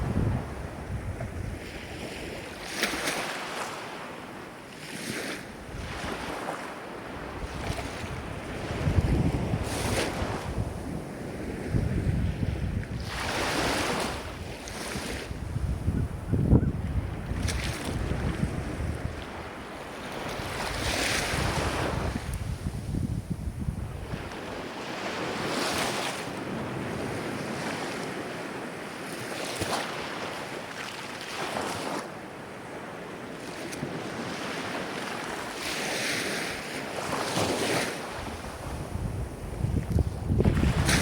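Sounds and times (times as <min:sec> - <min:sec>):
wind buffeting microphone: 0:00.0 - 0:02.4, 0:07.1 - 0:25.6, 0:37.0 - 0:41.0
ocean waves washing ashore: 0:00.0 - 0:41.0.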